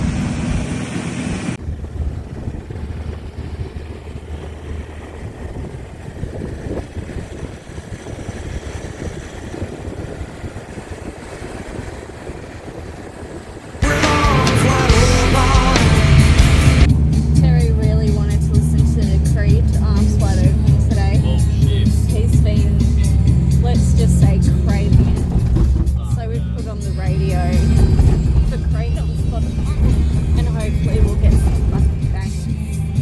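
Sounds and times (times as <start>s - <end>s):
diesel engine driving on sand: 0.0s - 33.0s
loud rock music: 13.8s - 31.8s.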